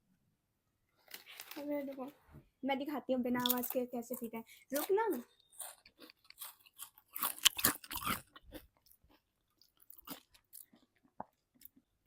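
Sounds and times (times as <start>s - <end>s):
crackling handling noises: 1.0s - 2.2s.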